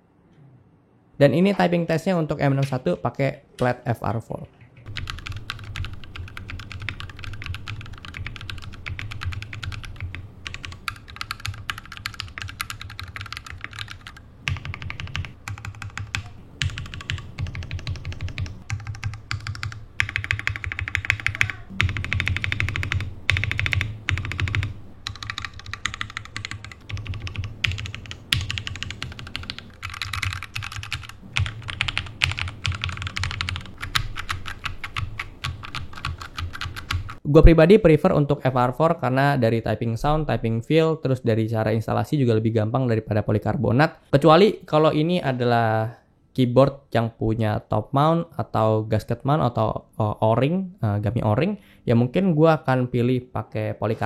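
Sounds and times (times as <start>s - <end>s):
mechanical keyboard typing: 4.6s - 37.2s.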